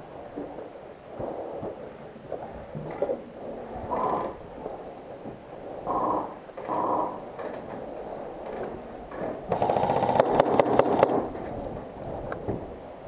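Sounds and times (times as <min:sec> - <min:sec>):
airsoft gun full-auto burst: 0:09.5 - 0:11.3.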